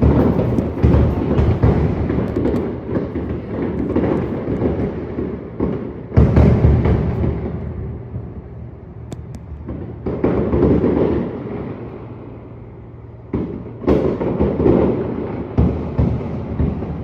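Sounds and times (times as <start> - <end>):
firework shells booming: 0.0 - 17.0
sharp small cracks: 9.1 - 9.7.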